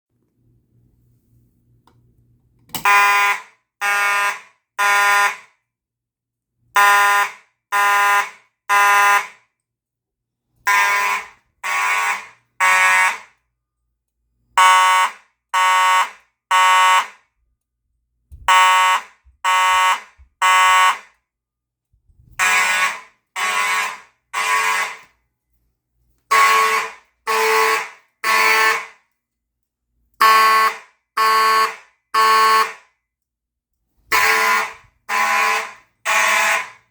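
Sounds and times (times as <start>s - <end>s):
fire alarm horn blasts: 2.8s - 5.6s, 6.7s - 9.5s, 10.7s - 13.4s, 14.6s - 17.3s, 18.4s - 21.2s, 22.4s - 25.1s, 26.3s - 29.0s, 30.2s - 32.9s, 34.1s - 36.9s.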